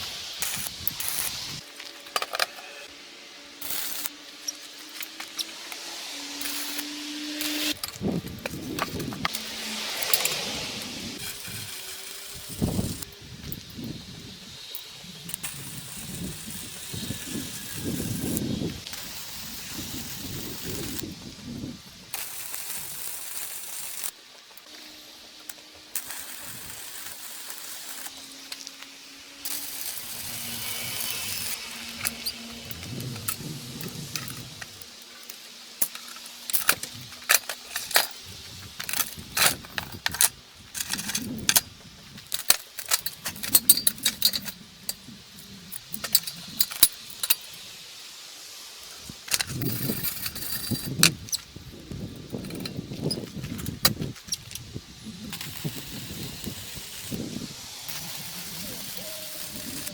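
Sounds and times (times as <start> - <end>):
metal parts and tools clinking: 0.0 - 21.2, 22.1 - 47.6, 48.8 - 59.9
low rumbling: 29.4 - 34.8.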